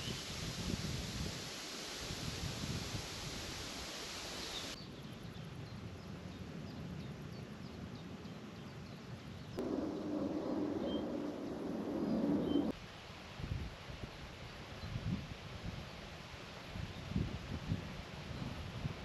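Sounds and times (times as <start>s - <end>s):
wind rustling leaves: 0.0s - 19.0s
small birds chirping faintly: 4.2s - 12.8s
steady low rumble: 9.6s - 12.7s.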